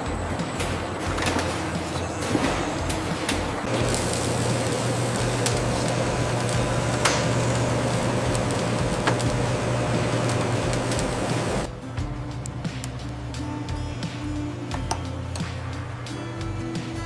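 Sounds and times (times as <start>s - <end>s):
factory machinery hum: 0.0s - 11.7s.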